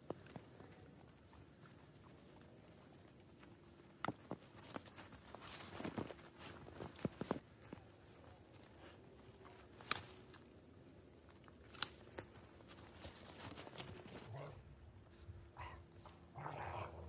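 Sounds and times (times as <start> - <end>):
footsteps through snow: 4.4 - 9.0.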